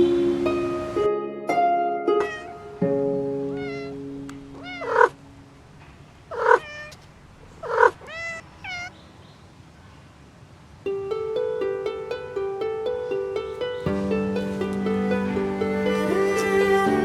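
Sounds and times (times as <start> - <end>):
plucked string note: 0.0 - 5.4, 10.9 - 17.0
cat meowing: 2.2 - 2.8, 3.5 - 5.2, 6.3 - 7.0, 7.6 - 9.0.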